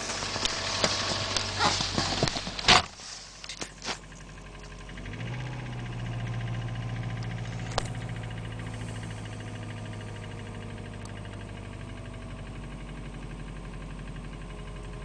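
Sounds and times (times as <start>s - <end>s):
steady low hum: 0.0s - 12.5s
car engine knocking and clicking: 0.0s - 15.0s.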